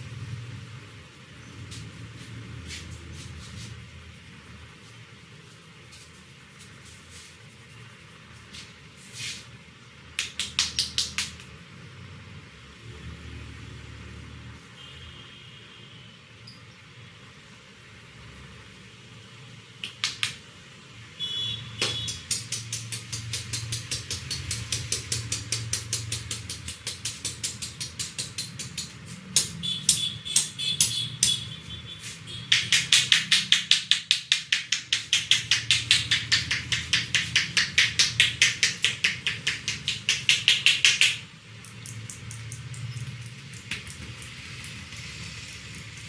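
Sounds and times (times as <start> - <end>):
hands slapping a head: 10.1 - 11.5, 19.8 - 20.4, 21.8 - 42.7, 43.5 - 44.3.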